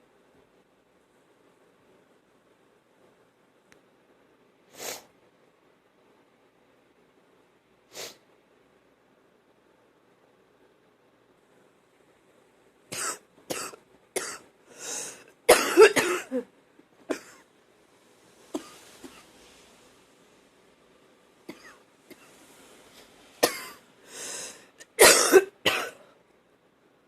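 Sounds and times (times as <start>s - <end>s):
woman's wet cough: 15.5s - 16.5s, 25.0s - 26.0s.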